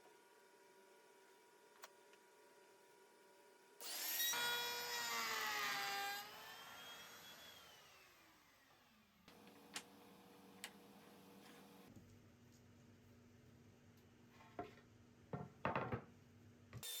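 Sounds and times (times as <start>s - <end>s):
table saw motor whining: 3.8s - 8.7s.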